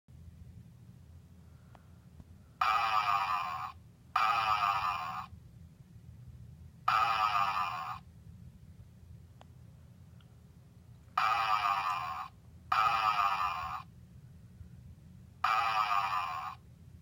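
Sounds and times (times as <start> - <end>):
toy dog electronic snoring: 2.6 - 5.3, 6.9 - 8.0, 11.2 - 13.9, 15.4 - 16.6.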